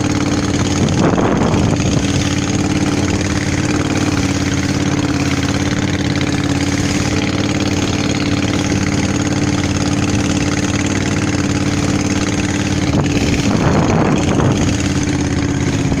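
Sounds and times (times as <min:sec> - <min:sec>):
boat engine running: 0:00.0 - 0:16.0.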